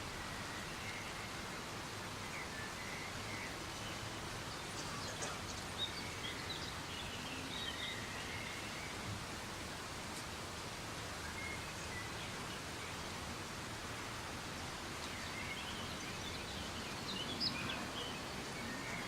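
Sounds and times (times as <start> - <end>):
soft rain falling: 0.0 - 19.0
faint bird chirps: 2.3 - 9.1.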